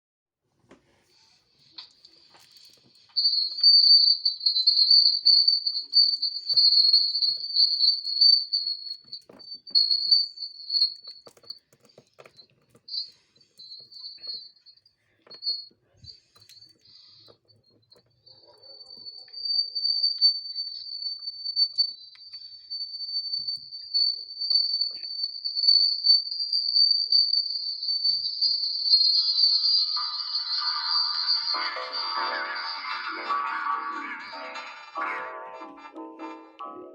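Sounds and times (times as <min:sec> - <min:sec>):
piercing high-pitched tone: 0:26.4 - 0:36.9.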